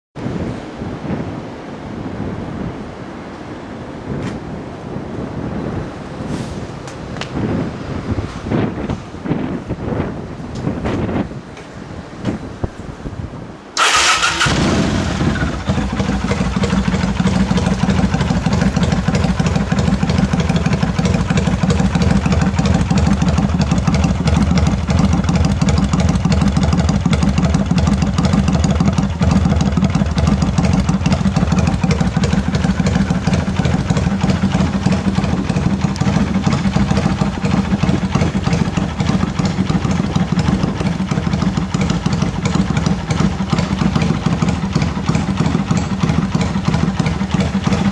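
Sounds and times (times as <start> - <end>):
motorcycle engine idling: 13.8 - 47.9.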